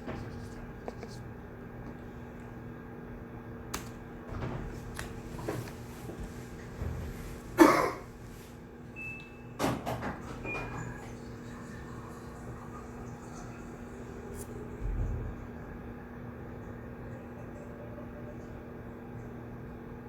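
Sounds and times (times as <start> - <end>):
clicks and knocks at desks: 9.6 - 10.8
steady low hum: 11.2 - 20.0.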